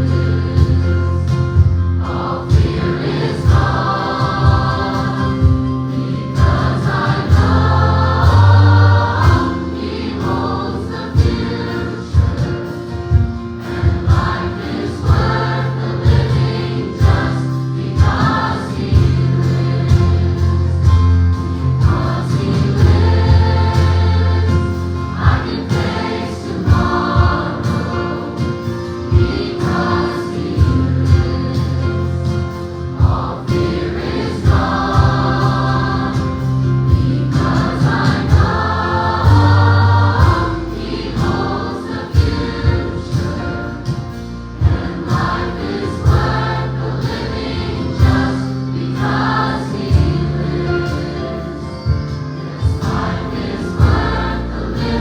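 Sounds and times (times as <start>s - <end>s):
bass line: 0.0s - 9.7s, 18.0s - 26.0s, 30.6s - 43.5s
band accompaniment: 0.0s - 55.0s
gospel choir singing: 0.0s - 55.0s
drum beat: 0.6s - 31.8s, 33.0s - 47.3s, 48.0s - 49.1s, 53.8s - 55.0s.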